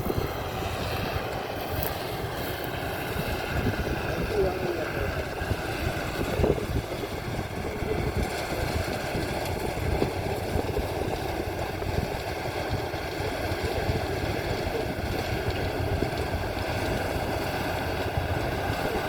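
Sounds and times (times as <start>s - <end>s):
combine harvester running: 0.0s - 19.0s.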